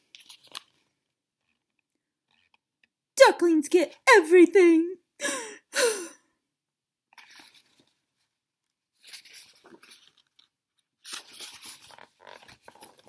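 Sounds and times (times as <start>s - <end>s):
book pages rustling and turning: 0.0s - 1.8s, 7.1s - 8.2s, 8.9s - 13.0s.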